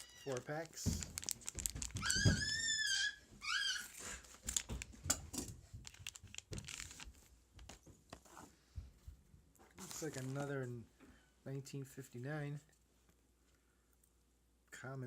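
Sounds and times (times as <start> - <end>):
card pack wrapper crinkling: 0.0 - 2.6, 4.2 - 5.0, 5.8 - 7.8, 9.8 - 10.6
high-pitched whining cries: 2.0 - 4.0.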